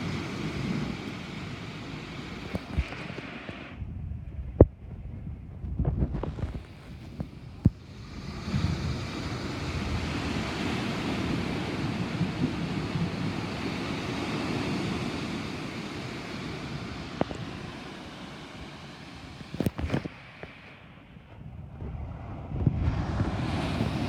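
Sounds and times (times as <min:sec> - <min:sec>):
thunder rumbling: 0:00.0 - 0:18.2.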